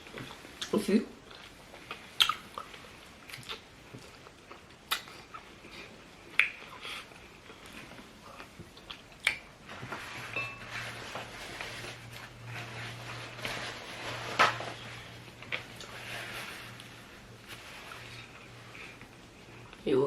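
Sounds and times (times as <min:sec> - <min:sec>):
chewing: 0:00.0 - 0:09.5.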